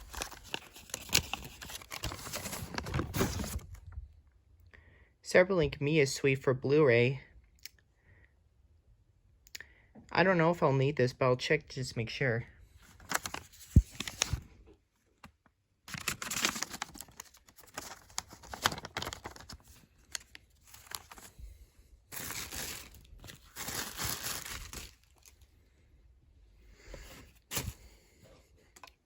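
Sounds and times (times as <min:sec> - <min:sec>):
packaging crinkling and tearing: 0:00.0 - 0:03.8, 0:12.9 - 0:14.5, 0:15.9 - 0:21.4, 0:22.1 - 0:25.5.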